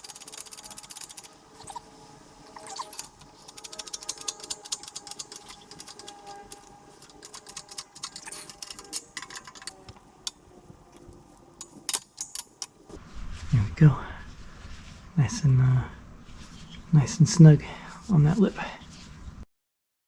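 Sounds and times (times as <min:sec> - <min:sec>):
ratchet wrench clicking: 0:00.0 - 0:01.8, 0:02.5 - 0:12.8.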